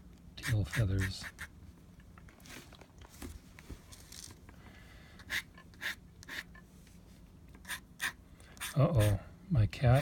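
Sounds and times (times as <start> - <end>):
pen nib scratching on paper: 0.4 - 1.5, 5.3 - 6.5.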